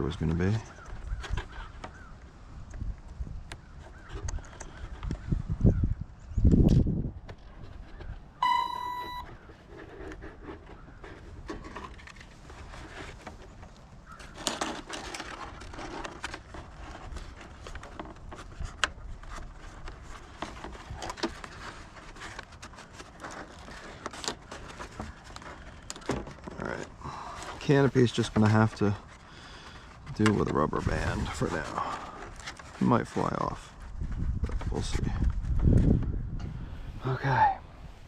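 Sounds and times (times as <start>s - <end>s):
wind rumbling on microphone: 0.0s - 8.4s, 9.2s - 23.8s, 30.0s - 38.0s
handling clicks and rustles: 6.7s - 35.4s
short electronic beep: 8.4s - 9.3s.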